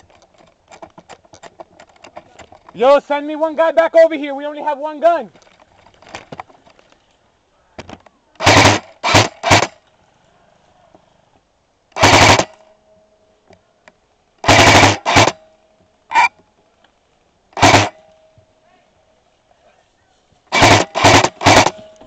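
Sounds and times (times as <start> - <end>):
airsoft gun firing bursts: 8.4 - 9.8, 12.0 - 12.6, 14.4 - 15.4, 17.6 - 18.0, 20.5 - 21.8.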